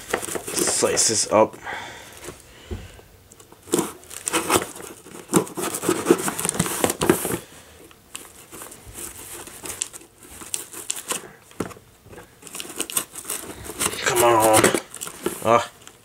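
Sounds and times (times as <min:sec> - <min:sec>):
packaging crinkling and tearing: 0:00.0 - 0:01.3, 0:03.3 - 0:16.0.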